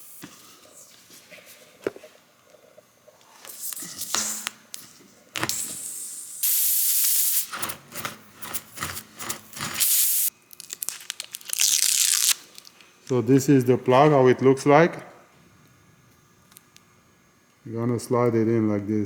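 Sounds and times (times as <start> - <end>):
air hissing from tyre: 5.6 - 7.5, 9.8 - 10.3.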